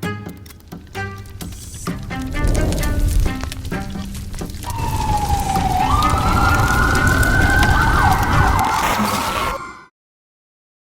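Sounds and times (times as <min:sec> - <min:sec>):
music: 0:00.0 - 0:09.9
steady low rumble: 0:01.4 - 0:08.3
siren wailing: 0:04.4 - 0:09.9.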